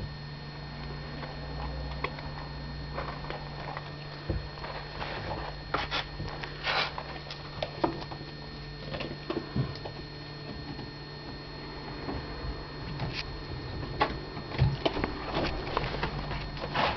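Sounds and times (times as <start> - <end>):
steady low hum: 0.0 - 16.9
scratchy rustles: 2.9 - 7.3, 15.1 - 16.9.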